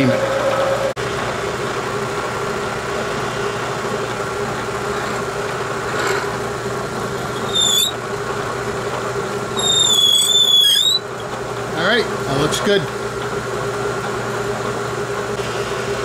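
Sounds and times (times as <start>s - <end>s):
milling machine spindle running: 0.0s - 16.0s
reamer squealing: 7.3s - 8.0s, 9.5s - 11.1s.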